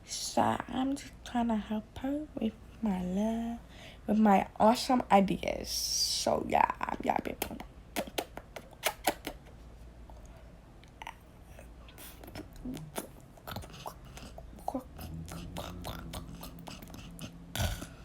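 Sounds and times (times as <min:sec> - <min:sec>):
low steady hum: 0:00.0 - 0:18.0
mouth smacks and clicks: 0:07.4 - 0:09.5, 0:10.1 - 0:18.0.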